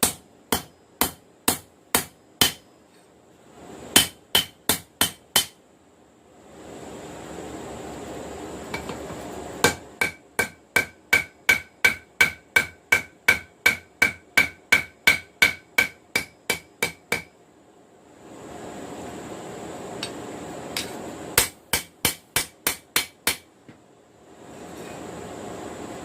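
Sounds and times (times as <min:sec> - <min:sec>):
hammer striking steel on anvil: 0:00.0 - 0:02.7, 0:03.9 - 0:05.6, 0:09.6 - 0:17.4, 0:20.8 - 0:23.5.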